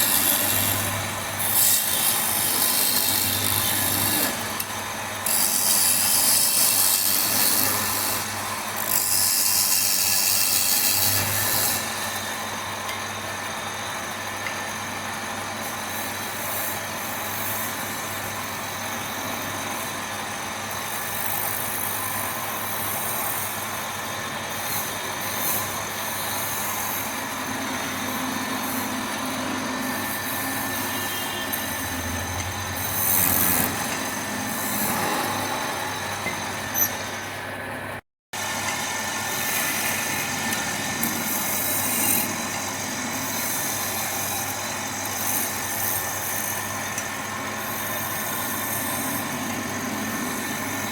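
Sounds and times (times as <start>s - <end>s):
tool hissing on spinning wood: 0.0s - 12.7s
wood lathe motor hum: 0.0s - 50.9s.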